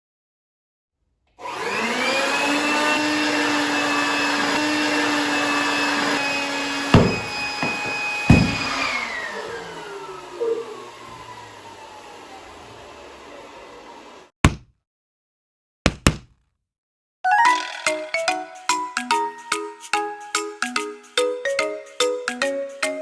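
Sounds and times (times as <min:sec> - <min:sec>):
electric blower whining: 0:01.4 - 0:14.3
sharp knocks: 0:06.9 - 0:08.9, 0:15.9 - 0:16.4.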